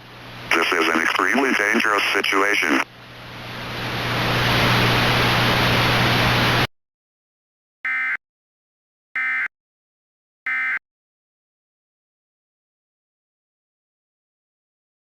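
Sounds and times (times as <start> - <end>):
static hiss with low hum: 0.0 - 6.7
warbling data bursts: 0.5 - 2.8.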